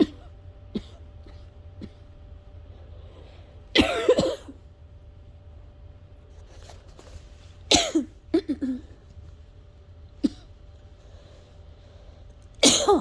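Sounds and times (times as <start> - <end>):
person coughing: 0.0 - 2.1, 3.7 - 4.6, 7.7 - 9.0, 10.2 - 10.6, 12.6 - 13.0.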